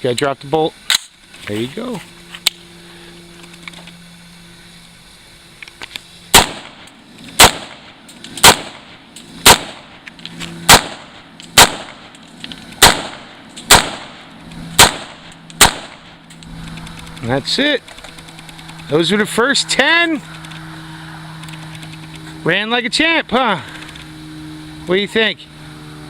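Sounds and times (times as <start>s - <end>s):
low hum: 0.0s - 26.0s
rifle shots: 6.3s - 10.0s, 10.7s - 12.1s, 12.8s - 16.2s.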